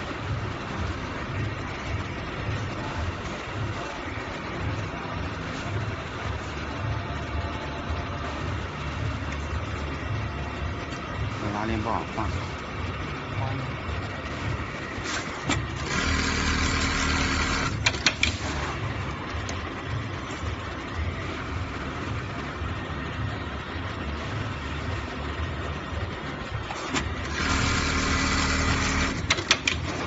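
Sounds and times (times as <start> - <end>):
machine hum: 0.0 - 30.0.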